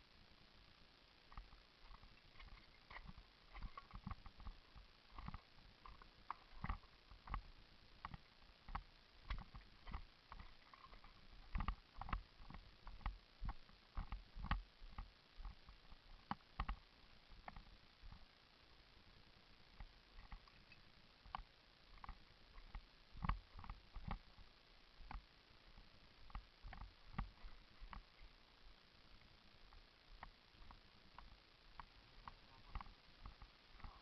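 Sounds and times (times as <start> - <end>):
gear clicking and knocking: 1.3 - 15.6.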